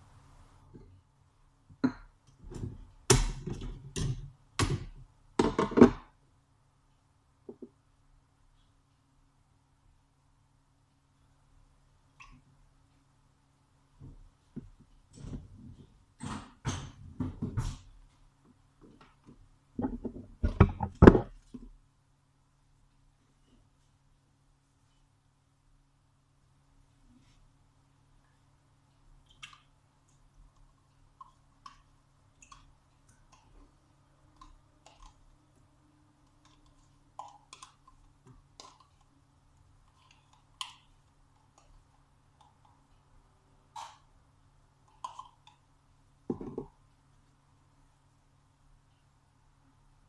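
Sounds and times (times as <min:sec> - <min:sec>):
kitchen objects knocking and clattering: 0:46.3 - 0:46.8.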